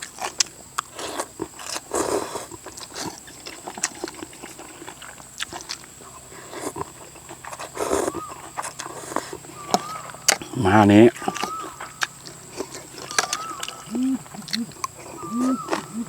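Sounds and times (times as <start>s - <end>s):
person slurping and chewing noodles: 0.0s - 16.0s
sharp mouth clicks: 6.6s - 16.0s.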